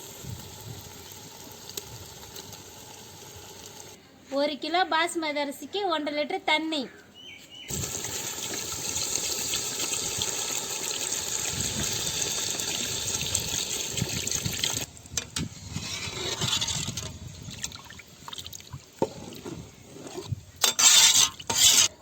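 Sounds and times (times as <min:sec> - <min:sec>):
water pouring into a pot: 0:07.7 - 0:14.9.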